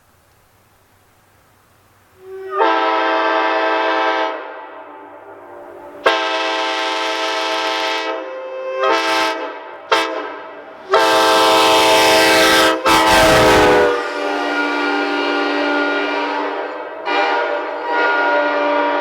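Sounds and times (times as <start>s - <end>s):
multi-chime air horn blasts: 11.0s - 19.0s.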